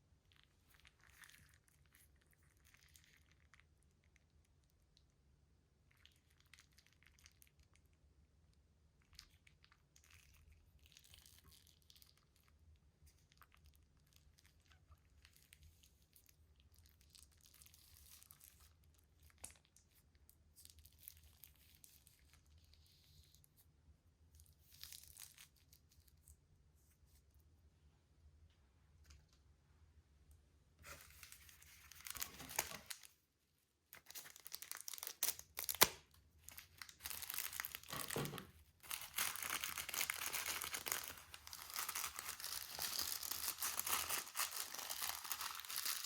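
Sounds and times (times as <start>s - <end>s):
slime and plastic crinkling: 0.2s - 4.4s, 8.9s - 23.6s, 24.3s - 26.4s, 30.8s - 33.3s, 33.9s - 46.0s.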